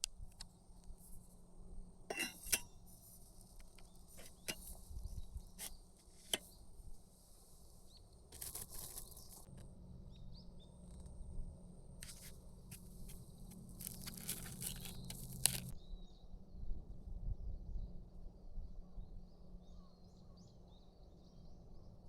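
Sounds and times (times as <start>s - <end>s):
crinkling and rustling handling: 8.3s - 9.5s, 12.0s - 15.8s
low steady hum: 9.2s - 15.8s.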